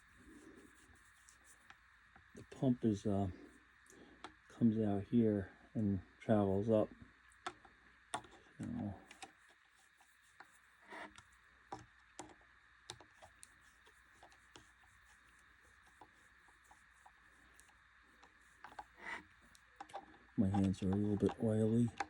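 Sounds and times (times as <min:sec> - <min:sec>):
light clicks and rubbing of hands: 0:12.2 - 0:22.0.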